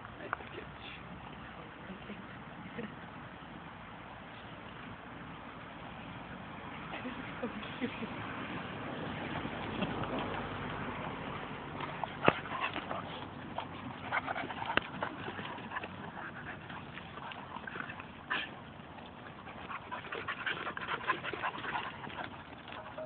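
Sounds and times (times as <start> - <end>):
dogs playing: 4.6 - 23.0.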